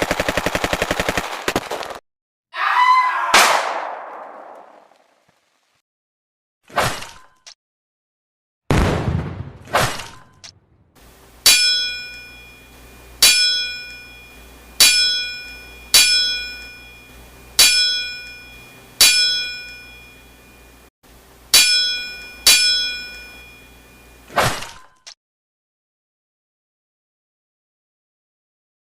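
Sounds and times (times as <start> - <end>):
low steady hum: 10.2 - 24.3
sharp metallic clanks: 11.4 - 20.2, 21.5 - 23.7.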